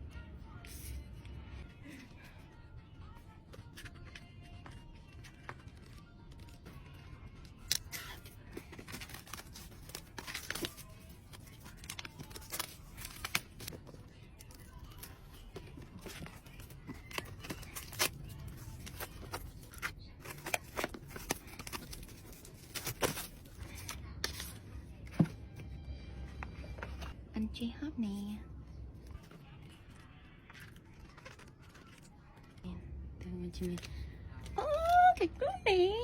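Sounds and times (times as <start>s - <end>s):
plastic and paper tearing: 3.6s - 24.6s, 29.1s - 32.6s.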